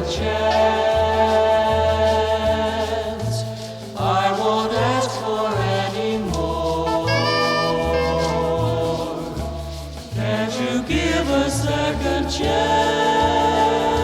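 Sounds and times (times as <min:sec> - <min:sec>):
choir-like singing: 0:00.0 - 0:14.0
alternating bass line: 0:05.6 - 0:14.0.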